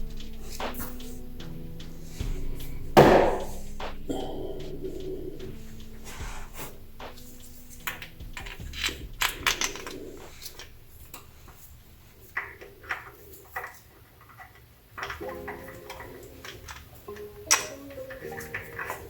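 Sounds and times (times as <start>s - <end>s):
tools and parts clicking: 7.0s - 19.0s.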